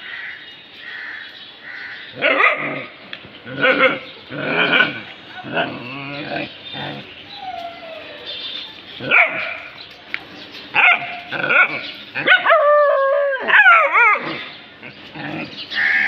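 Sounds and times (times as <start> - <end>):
dog barking and whining: 10.8 - 14.5.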